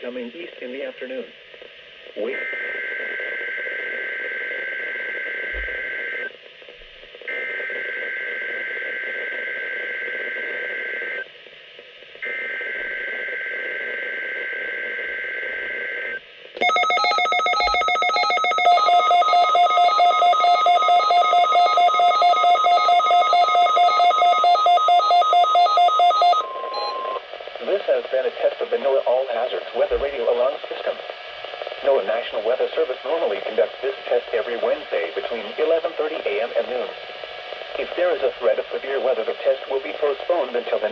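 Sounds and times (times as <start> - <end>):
electronic alert tone beeping: 16.6 - 27.2
two-tone data screech: 16.6 - 27.2.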